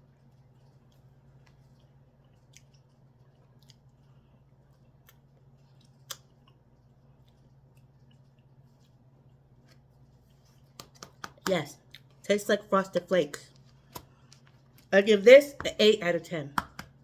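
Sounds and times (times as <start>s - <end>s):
low steady hum: 0.0s - 17.0s
mouth clicks while eating: 4.9s - 6.6s.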